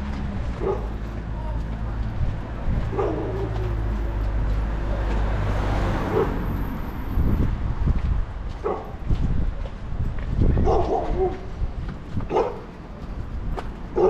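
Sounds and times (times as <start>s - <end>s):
vehicle engine humming: 0.0s - 9.1s.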